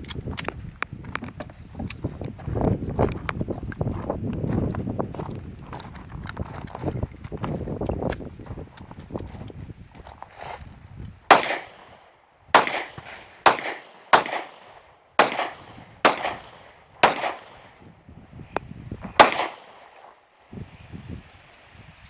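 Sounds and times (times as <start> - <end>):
handgun shots: 11.3 - 12.0, 12.6 - 17.8, 19.2 - 20.1.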